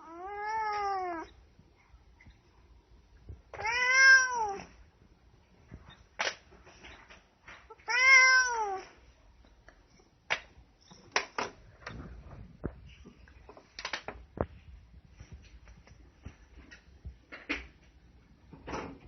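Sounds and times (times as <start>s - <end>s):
cat meowing: 0.0s - 1.4s, 3.5s - 4.8s, 7.7s - 8.9s.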